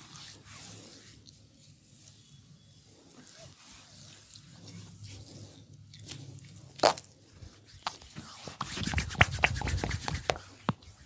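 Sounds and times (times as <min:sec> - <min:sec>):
hands rubbing skin: 0:07.8 - 0:11.0.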